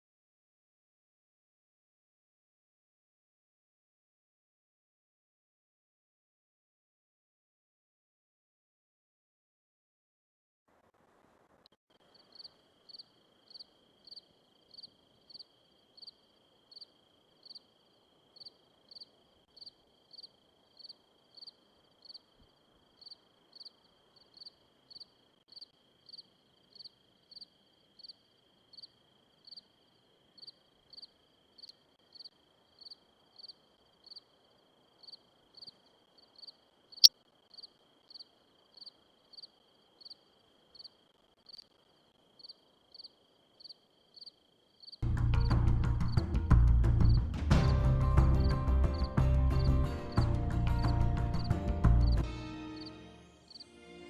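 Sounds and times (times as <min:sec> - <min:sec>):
cricket chirping: 0:11.9 - 0:45.0, 0:48.4 - 0:52.2, 0:52.8 - 0:53.7.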